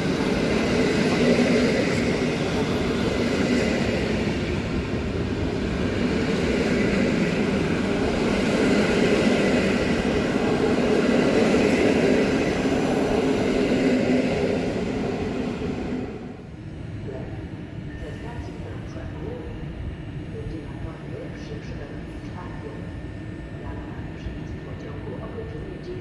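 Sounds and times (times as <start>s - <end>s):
train wheels rumbling on rails: 0.0s - 16.5s.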